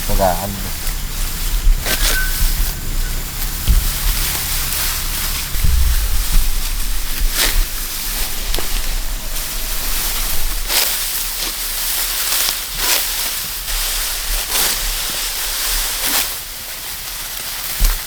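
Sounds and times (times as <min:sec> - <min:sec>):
wind rumble on microphone: 0:00.0 - 0:12.6
dry stalks rustling: 0:00.0 - 0:18.0
steady hiss: 0:00.0 - 0:18.0.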